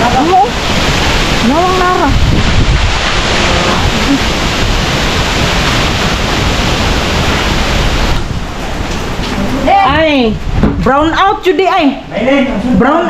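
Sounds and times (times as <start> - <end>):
wind rumbling on microphone: 0.0 - 11.4
strong wind blowing: 0.0 - 12.1.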